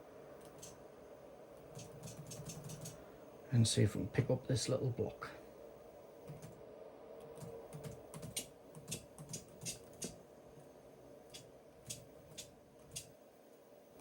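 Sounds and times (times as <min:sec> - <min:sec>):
faint hum: 0:00.0 - 0:14.0
computer keyboard key clicks: 0:01.8 - 0:03.0, 0:07.8 - 0:10.2.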